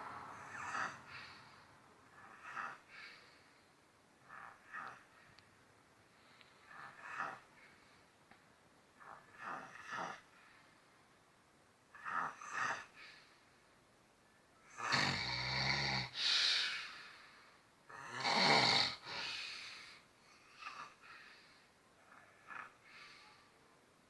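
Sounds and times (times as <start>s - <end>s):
man snoring loudly: 0.4s - 1.0s, 14.7s - 16.2s, 17.9s - 19.4s.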